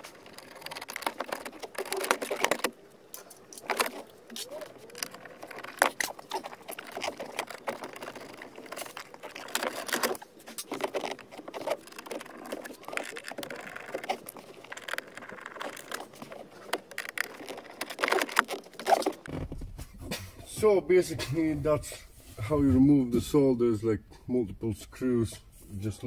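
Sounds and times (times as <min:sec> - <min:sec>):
plastic trim clicking and scraping: 0:00.0 - 0:19.8.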